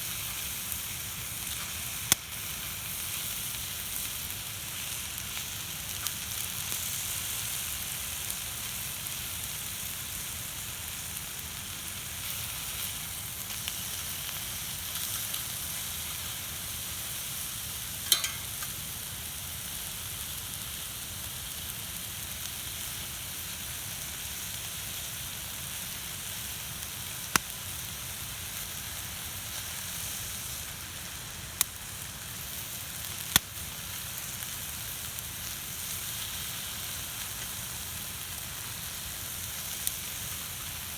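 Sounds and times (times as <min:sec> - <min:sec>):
food sizzling on a griddle: 0:00.0 - 0:40.9.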